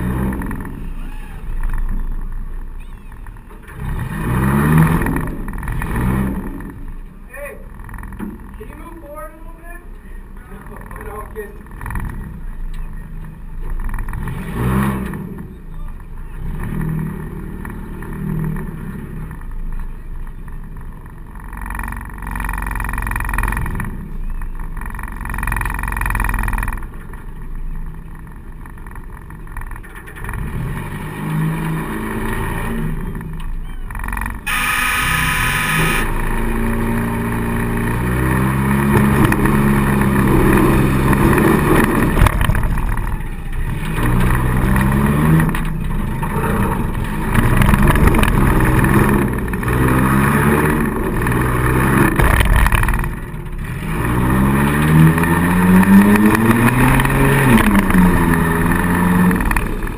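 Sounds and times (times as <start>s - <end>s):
car engine revving: 0.0s - 19.8s, 20.6s - 59.9s
engine clatter: 0.0s - 59.9s
brief shrill tone: 33.7s - 36.3s.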